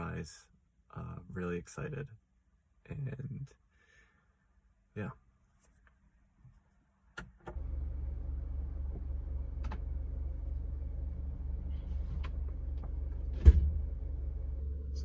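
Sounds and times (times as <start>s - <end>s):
car engine rumbling: 7.4s - 15.0s.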